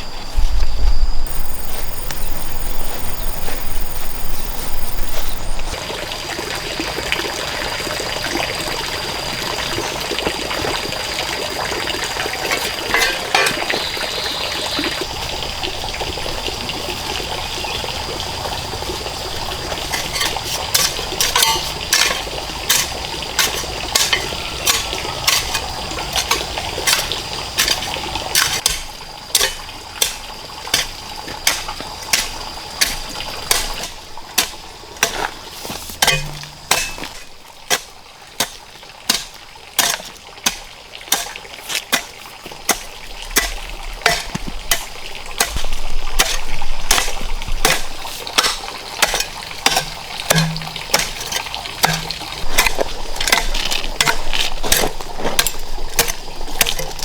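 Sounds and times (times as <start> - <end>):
thin high tone: 0.0 - 5.8
running water: 1.3 - 57.0.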